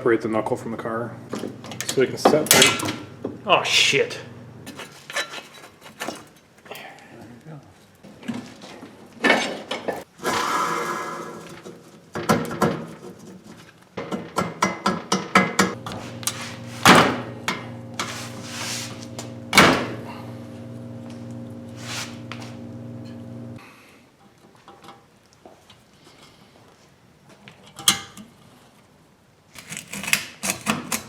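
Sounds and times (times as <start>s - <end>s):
steady low hum: 0.6s - 4.7s, 15.8s - 23.6s
metal tools clanking: 1.3s - 3.1s.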